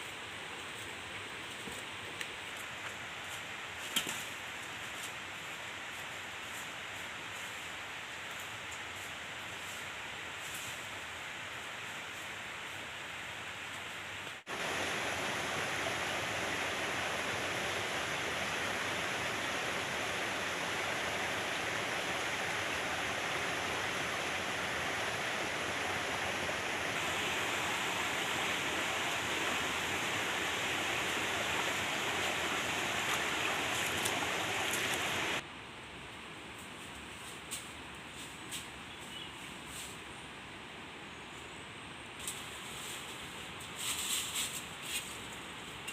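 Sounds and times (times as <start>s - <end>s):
running water rushing: 14.4s - 35.4s.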